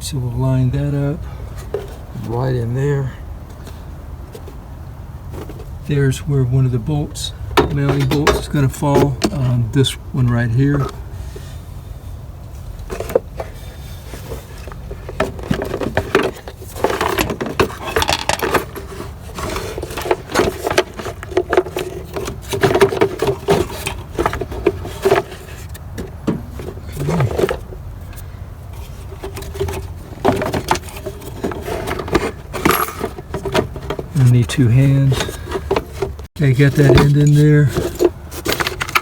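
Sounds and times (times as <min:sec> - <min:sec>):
metal parts clinking and scraping: 0:12.8 - 0:28.2, 0:28.8 - 0:39.0.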